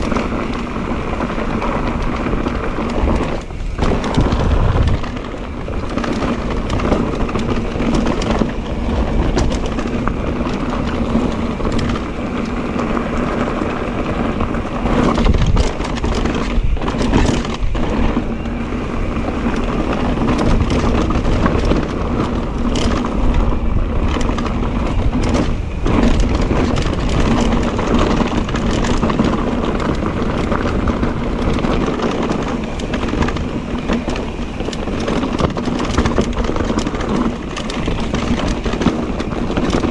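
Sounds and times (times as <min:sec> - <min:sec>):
electric bike motor hum: 0:00.0 - 0:39.9
tyres and frame rattling on rocks: 0:00.0 - 0:39.9.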